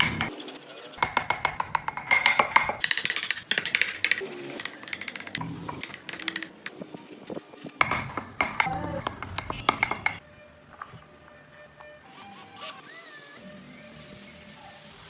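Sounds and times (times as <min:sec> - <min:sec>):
rapid clicking and clinking: 0:01.7 - 0:06.8
music: 0:04.8 - 0:15.0.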